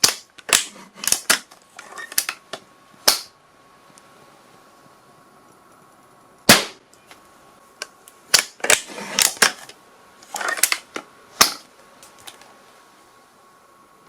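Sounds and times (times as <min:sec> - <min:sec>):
sharp gunshot: 0:06.5 - 0:06.8.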